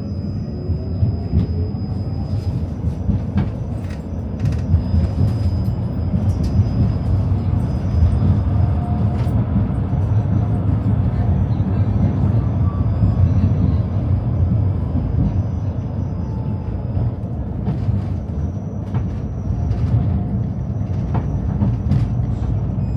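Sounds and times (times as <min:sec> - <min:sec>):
faint high whine: 0:00.0 - 0:03.0
tram wheels rumbling on rails: 0:00.0 - 0:22.9.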